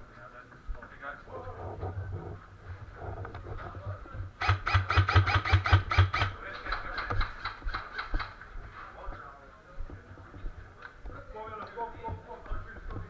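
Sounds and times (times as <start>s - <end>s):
airsoft rifle shots: 4.4s - 8.4s.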